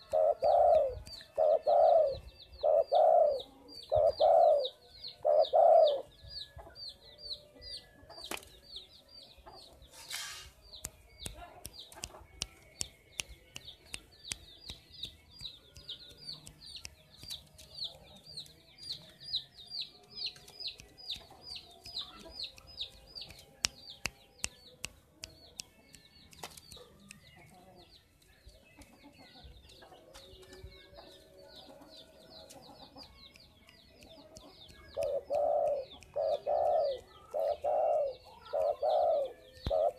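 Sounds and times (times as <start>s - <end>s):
dove cooing: 0.0s - 6.0s, 35.0s - 39.9s.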